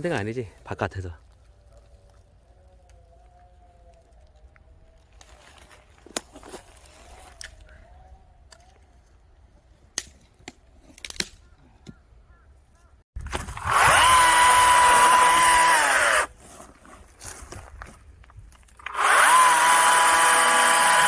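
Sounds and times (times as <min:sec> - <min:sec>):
electric chainsaw whining: 0:13.5 - 0:16.3, 0:18.8 - 0:21.0.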